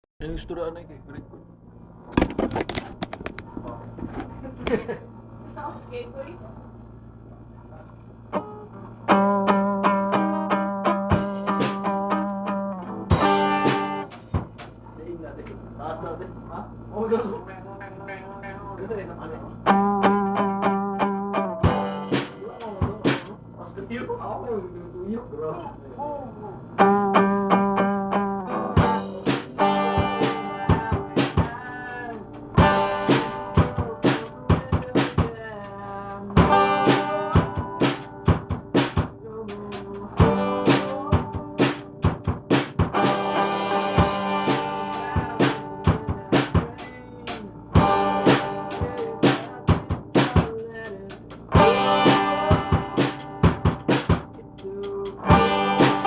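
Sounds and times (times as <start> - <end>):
band music: 10.0 - 14.7, 21.6 - 23.4, 28.5 - 56.0
drum kit beat: 11.0 - 12.2, 13.1 - 14.8, 21.6 - 23.4, 28.8 - 56.0.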